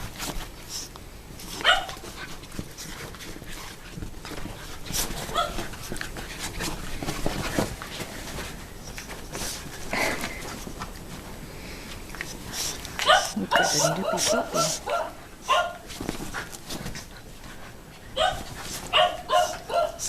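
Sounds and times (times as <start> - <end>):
dogs scuffling: 0.0 - 20.0
puppy yipping: 13.0 - 15.8, 18.2 - 20.0.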